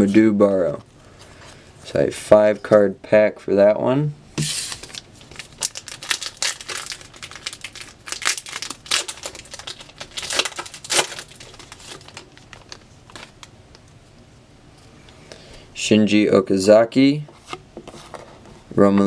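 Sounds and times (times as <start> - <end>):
wrapper tearing and crinkling: 4.7 - 13.5.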